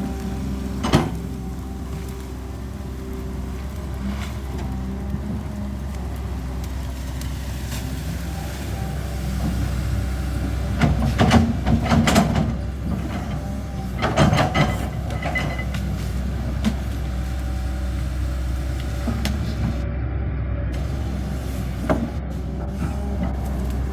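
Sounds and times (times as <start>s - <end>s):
excavator diesel engine running: 0.0s - 23.9s
scraping and clanking: 7.6s - 17.6s.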